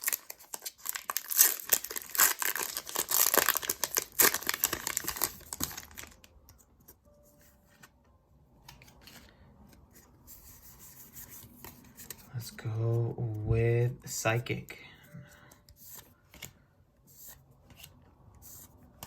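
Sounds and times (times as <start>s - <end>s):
foil wrapper tearing and crinkling: 0.0s - 6.2s.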